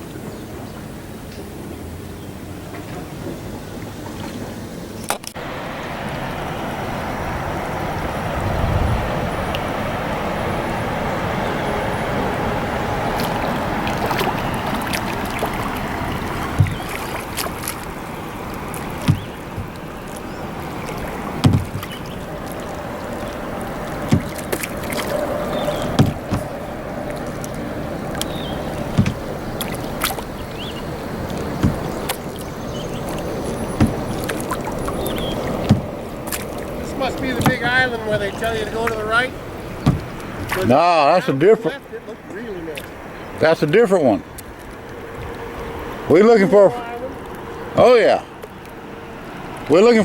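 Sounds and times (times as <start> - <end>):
paddle splashes: 0.0 - 50.0
rushing river water: 0.0 - 50.0
paddle clicks: 4.0 - 5.4, 13.1 - 40.8, 42.2 - 46.2
low thump: 16.5 - 17.1, 19.0 - 19.8, 21.4 - 22.0, 24.0 - 24.6, 25.8 - 26.6, 28.9 - 29.4, 31.6 - 32.2, 33.7 - 34.3, 35.6 - 36.0, 39.8 - 40.6
sharp clicks and knocks: 16.6 - 17.8, 18.8 - 19.9, 21.4 - 22.0, 25.8 - 26.6, 28.9 - 30.2, 31.3 - 32.4, 33.7 - 34.5, 35.6 - 36.5, 39.8 - 40.6.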